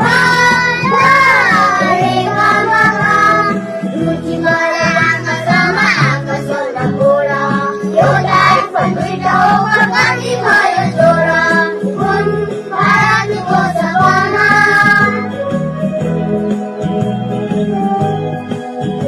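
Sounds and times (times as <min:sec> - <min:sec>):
voices singing: 0:00.0 - 0:15.3
instrumental accompaniment: 0:00.0 - 0:19.0.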